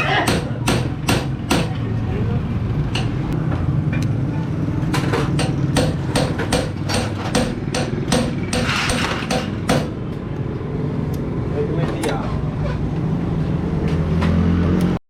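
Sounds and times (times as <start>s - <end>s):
hammer striking metal: 0.3s - 1.8s, 5.0s - 10.0s.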